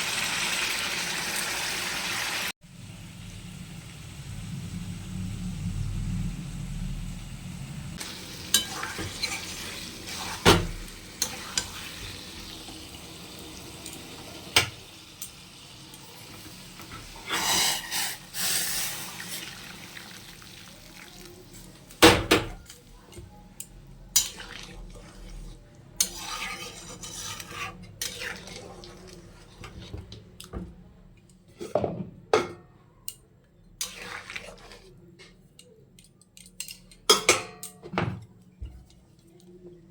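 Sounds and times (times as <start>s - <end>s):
metal utensils clinking on pots: 8.0s - 12.8s, 22.0s - 30.1s, 35.2s - 39.0s
food stirred in a pan: 8.0s - 30.6s, 33.7s - 35.6s.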